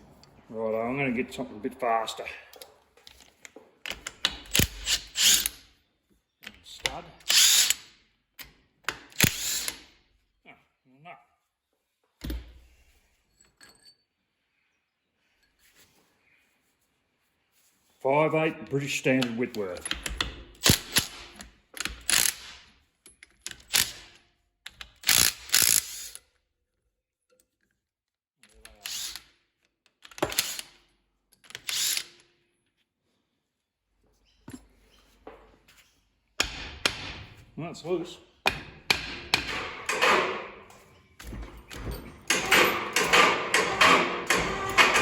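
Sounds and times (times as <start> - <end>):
ratchet wrench clicking: 4.3 - 5.6, 21.8 - 22.6, 24.7 - 26.2
metal tools clanking on engine: 39.4 - 45.0.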